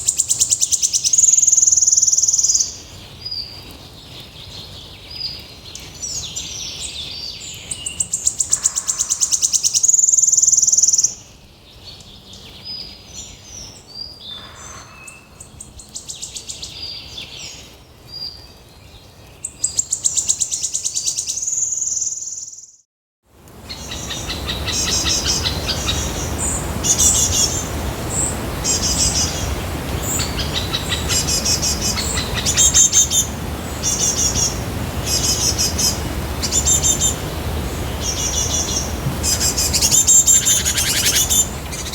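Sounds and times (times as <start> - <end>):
recording hiss: 0.0 - 22.1, 23.3 - 41.9.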